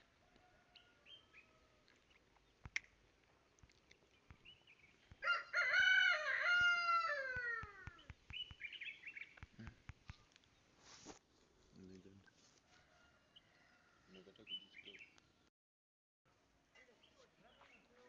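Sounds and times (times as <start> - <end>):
rooster crowing: 5.2 - 8.0, 12.7 - 14.1.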